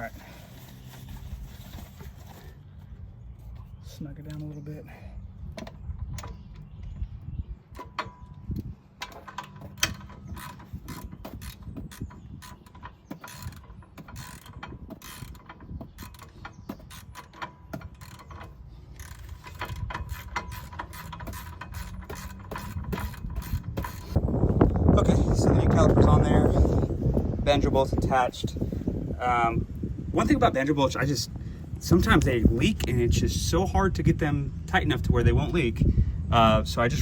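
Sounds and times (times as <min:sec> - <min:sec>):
ratchet wrench clicking: 0:09.0 - 0:24.2.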